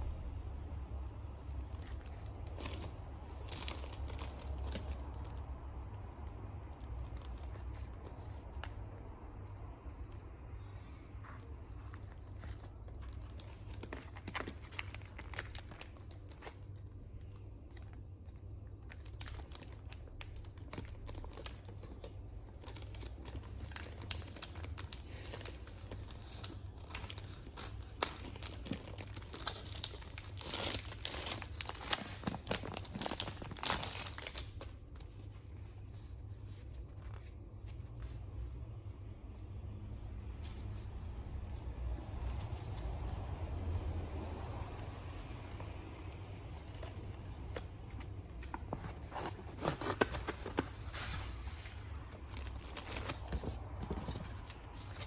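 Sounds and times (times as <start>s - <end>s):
low steady hum: 0.0s - 55.0s
packaging being torn and crinkled: 1.6s - 5.6s, 11.8s - 35.1s, 44.5s - 55.0s.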